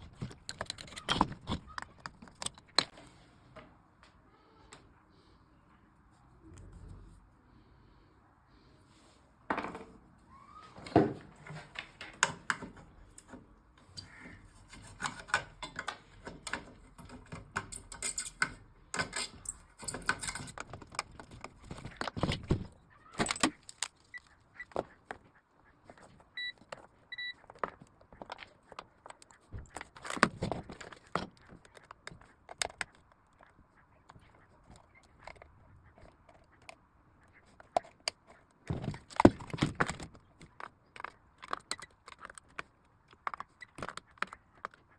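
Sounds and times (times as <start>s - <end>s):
tools clattering on workbench: 14.7s - 23.7s.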